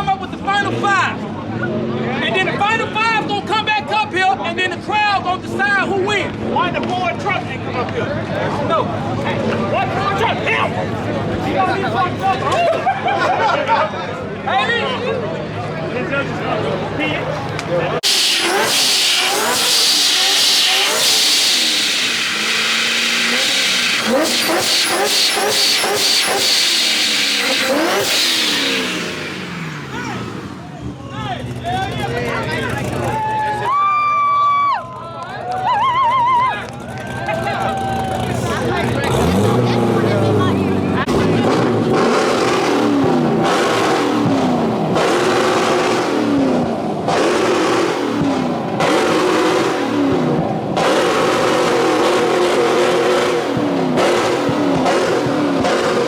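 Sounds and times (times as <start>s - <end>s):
car engine revving: 0.4s - 3.8s, 4.9s - 13.4s, 14.2s - 33.2s, 38.2s - 56.0s
tires squealing on pavement: 14.6s - 56.0s
loud rushing noise: 15.8s - 30.8s.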